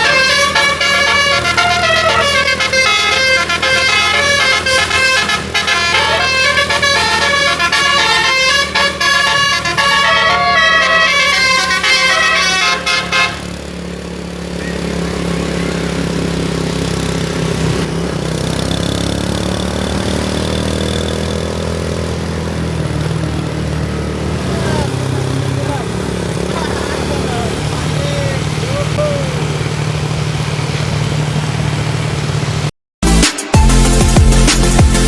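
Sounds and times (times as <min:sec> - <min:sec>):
multi-tone air horn tune: 0:00.0 - 0:13.9
bus engine running: 0:00.0 - 0:35.0.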